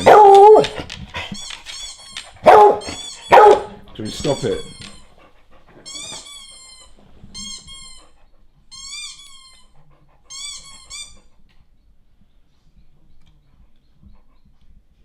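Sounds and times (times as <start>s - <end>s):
squeaky rubber toy: 1.4s - 5.2s, 5.8s - 11.3s.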